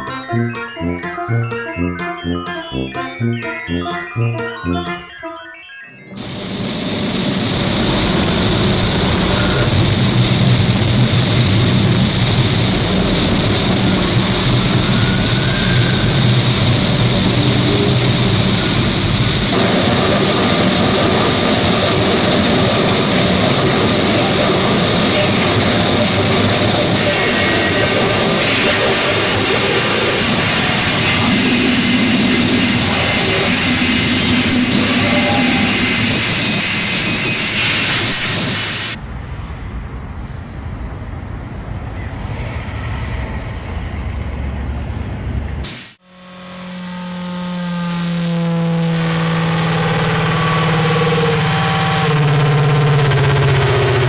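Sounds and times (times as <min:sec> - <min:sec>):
harsh noise music: 0:06.2 - 0:38.6
droning hum with overtones: 0:06.2 - 0:39.0, 0:45.7 - 0:54.0
dense rumbling roar with hiss: 0:06.2 - 0:39.4, 0:49.0 - 0:54.0.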